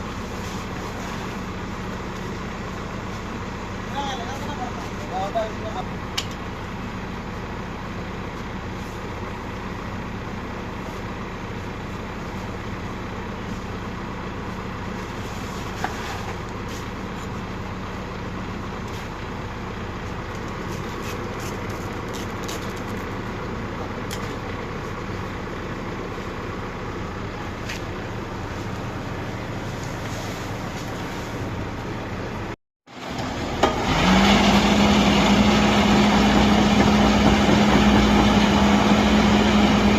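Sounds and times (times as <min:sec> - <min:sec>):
construction machine engine running: 0:00.0 - 0:39.9
louder engine rising in pitch: 0:32.9 - 0:39.9.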